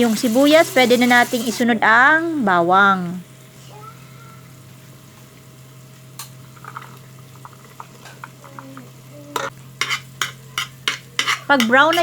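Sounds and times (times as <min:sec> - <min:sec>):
garlic and onion frying in oil: 0:00.0 - 0:01.7
spatula scraping a pan: 0:09.8 - 0:12.0.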